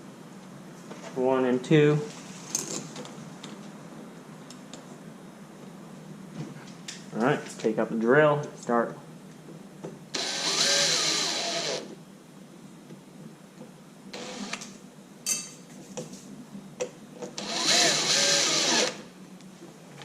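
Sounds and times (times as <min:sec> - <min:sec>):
cordless drill driving screws: 0:10.2 - 0:11.9, 0:14.2 - 0:14.7, 0:17.4 - 0:19.0.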